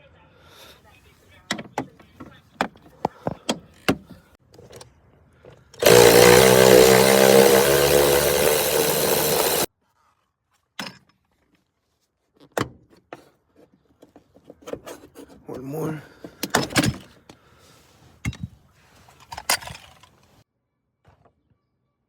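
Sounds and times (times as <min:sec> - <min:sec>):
power drill running hard: 0:05.8 - 0:09.7.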